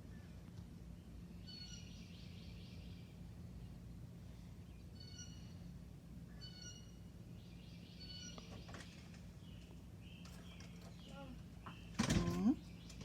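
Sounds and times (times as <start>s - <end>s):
steady low hum: 0.0s - 13.0s
small bird chirping: 1.3s - 3.8s, 4.6s - 5.7s, 6.3s - 13.0s.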